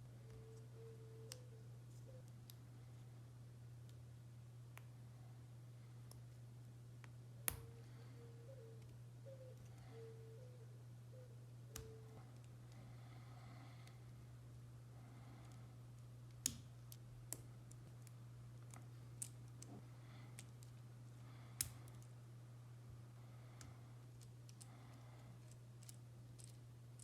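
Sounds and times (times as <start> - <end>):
steady low hum: 0.0 - 27.0
plastic pieces clicking together: 25.4 - 27.0.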